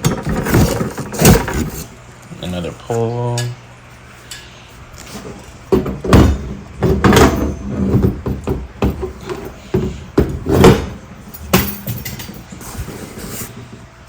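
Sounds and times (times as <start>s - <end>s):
plastic parts knocking: 5.7s - 10.9s.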